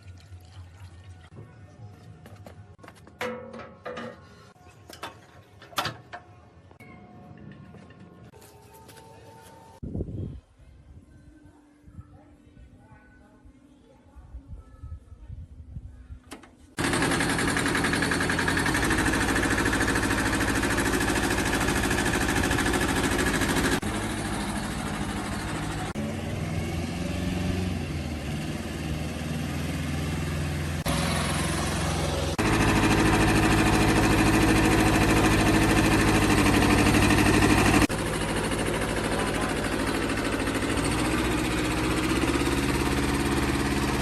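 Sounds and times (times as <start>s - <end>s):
tractor engine running: 16.8s - 44.0s.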